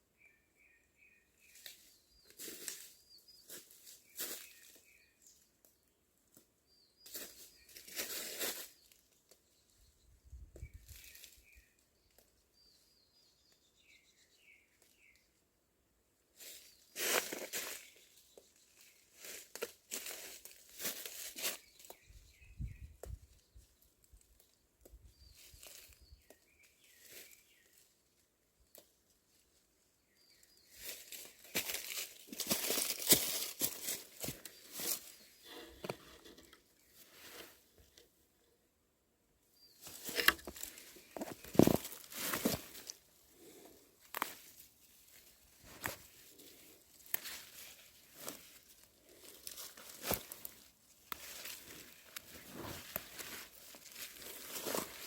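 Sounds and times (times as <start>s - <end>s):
faint bird chirps: 0.0s - 6.0s, 6.6s - 15.4s, 21.1s - 32.1s
rustling of plant leaves: 1.4s - 5.2s, 7.1s - 9.4s, 10.6s - 11.8s, 16.4s - 22.5s, 25.2s - 29.6s, 30.2s - 38.0s, 39.6s - 55.0s.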